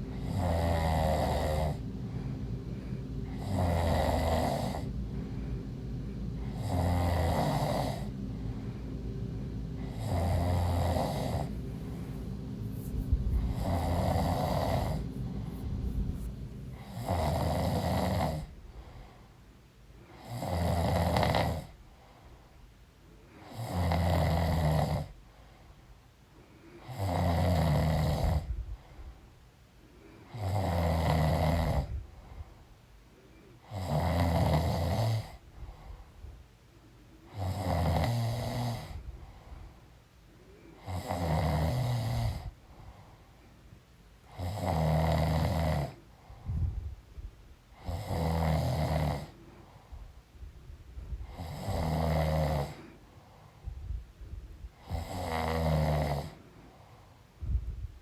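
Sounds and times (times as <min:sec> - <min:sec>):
woman snoring: 0:00.0 - 0:05.5, 0:06.4 - 0:08.6, 0:09.8 - 0:18.6, 0:20.2 - 0:21.7, 0:23.4 - 0:25.1, 0:26.8 - 0:28.5, 0:30.3 - 0:32.0, 0:33.7 - 0:35.4, 0:37.3 - 0:39.0, 0:40.8 - 0:42.5, 0:44.3 - 0:46.0, 0:47.8 - 0:49.4, 0:51.2 - 0:52.8, 0:54.8 - 0:56.4
quiet breaths: 0:00.0 - 0:58.0.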